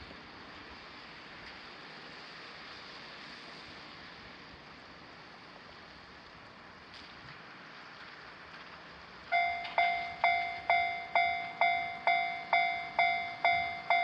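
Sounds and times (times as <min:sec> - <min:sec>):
water spraying onto road: 0:00.1 - 0:09.3.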